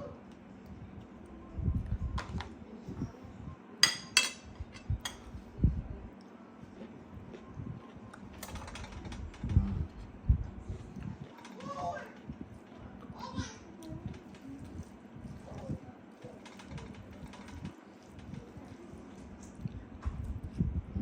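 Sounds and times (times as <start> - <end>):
dishes clinking: 3.8 - 5.3.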